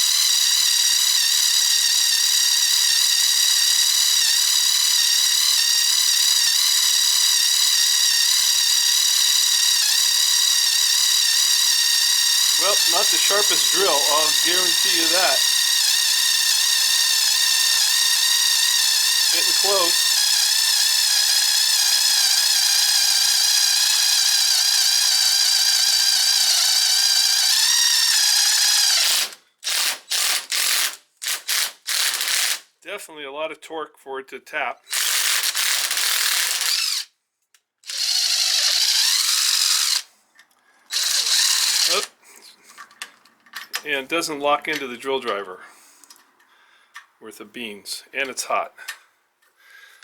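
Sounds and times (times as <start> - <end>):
drill whining into steel: 0.0 - 32.6, 34.8 - 37.2, 37.8 - 40.1, 40.9 - 42.8.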